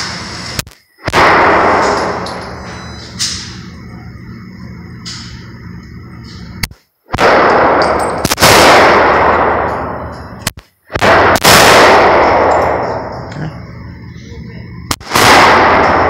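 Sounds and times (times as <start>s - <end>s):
pistol shots ringing: 7.1s - 13.2s, 14.9s - 16.0s.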